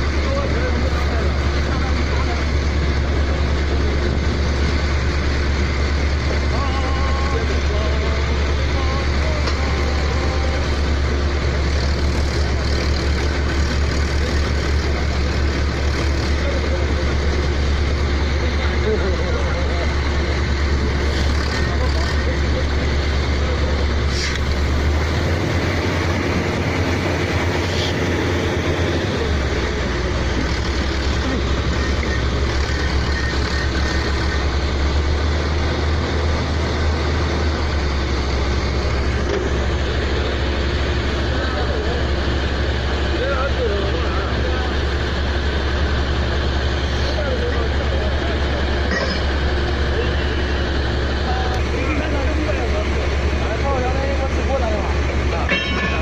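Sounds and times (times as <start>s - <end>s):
drilling rig engine drone: 0.0s - 56.0s
mechanical din: 55.4s - 56.0s.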